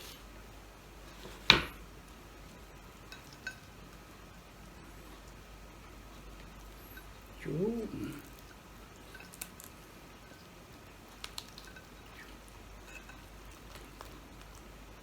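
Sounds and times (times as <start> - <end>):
person chewing food: 6.1 - 15.0.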